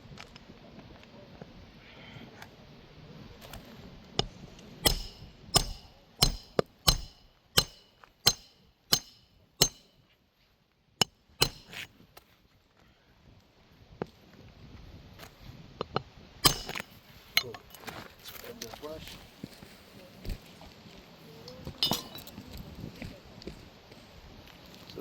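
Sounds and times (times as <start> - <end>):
hammer striking nail: 4.2 - 9.9, 11.4 - 11.9, 16.4 - 17.5.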